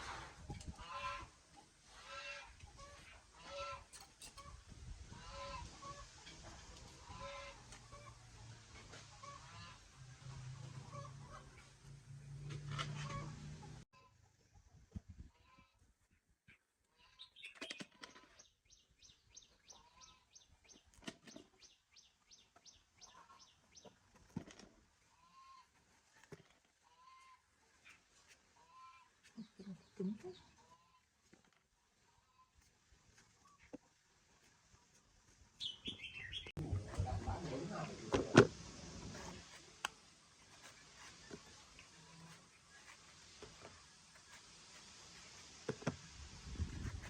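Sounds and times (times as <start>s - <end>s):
poultry calling: 0.8s - 1.3s, 2.0s - 6.2s, 7.0s - 8.2s, 8.9s - 9.9s, 10.7s - 11.7s, 25.1s - 25.8s, 26.8s - 28.0s, 28.6s - 31.1s.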